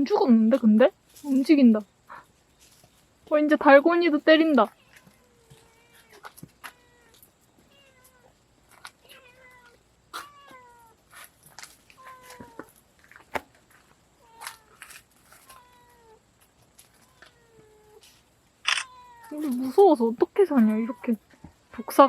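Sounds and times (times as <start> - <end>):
cat meowing: 4.7 - 8.3, 9.0 - 11.0, 18.7 - 19.6
sharp clicks: 18.6 - 18.9.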